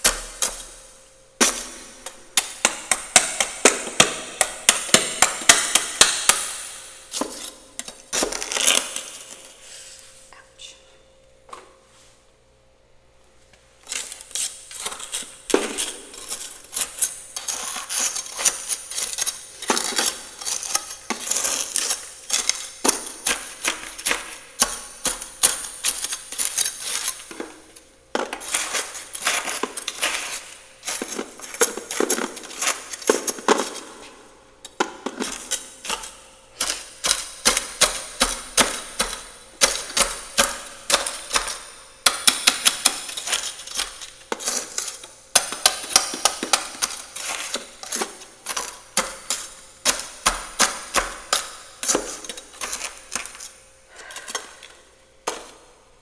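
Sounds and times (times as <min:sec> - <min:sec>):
frost being scraped in freezer: 0:07.0 - 0:09.9, 0:13.8 - 0:27.8, 0:28.4 - 0:34.1, 0:35.2 - 0:54.7.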